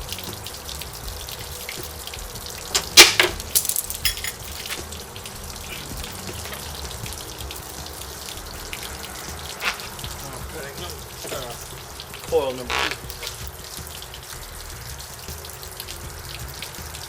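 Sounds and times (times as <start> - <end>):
steady hiss: 0.0 - 17.0
metal clicks of hand tools: 2.8 - 4.8.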